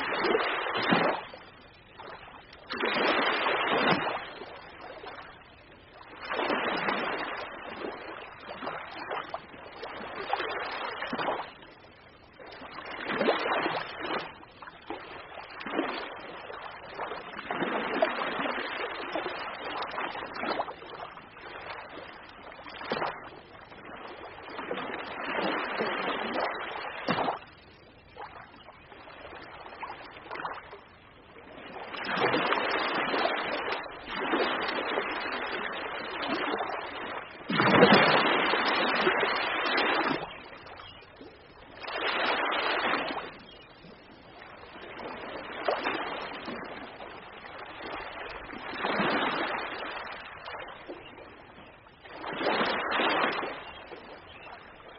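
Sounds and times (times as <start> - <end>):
ocean waves breaking: 0.0 - 5.2, 6.0 - 11.6, 31.5 - 40.8, 41.8 - 43.6, 44.4 - 50.9, 52.1 - 54.2.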